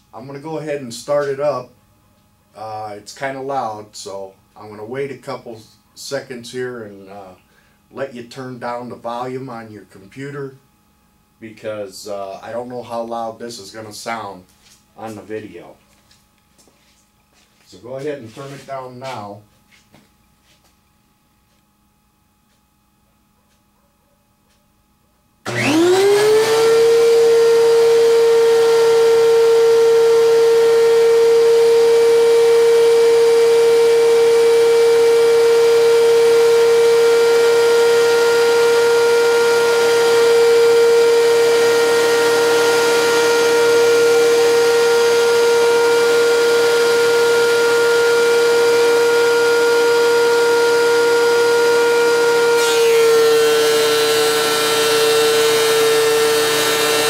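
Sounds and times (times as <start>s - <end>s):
planer motor high whine: 25.5s - 57.0s.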